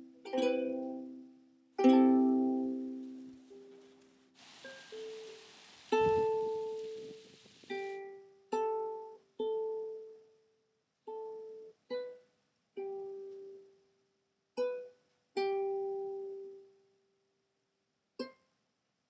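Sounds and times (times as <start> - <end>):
plucked string melody: 0.0 - 4.0, 4.7 - 10.3, 12.8 - 13.8, 14.6 - 16.7.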